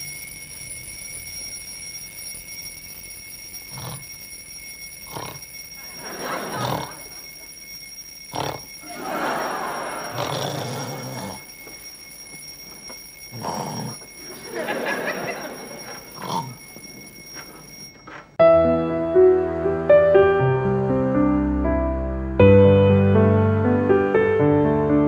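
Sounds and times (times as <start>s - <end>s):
alarm clock ringing: 0.0s - 18.4s
man snoring: 3.7s - 4.0s, 5.1s - 5.4s, 6.5s - 7.1s, 8.3s - 8.7s, 10.0s - 11.4s, 13.3s - 14.0s
piano music: 18.4s - 25.0s.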